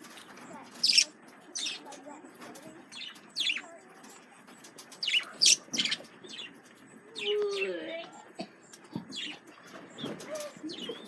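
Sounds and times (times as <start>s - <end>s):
budgerigars chirping: 0.7s - 1.9s, 2.9s - 3.6s, 4.9s - 6.6s.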